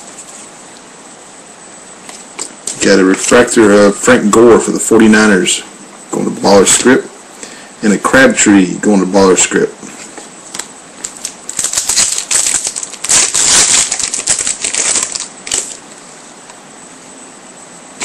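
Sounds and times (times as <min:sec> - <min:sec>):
cards being handled: 0:10.0 - 0:15.8
foil wrapper crinkling: 0:10.5 - 0:16.0.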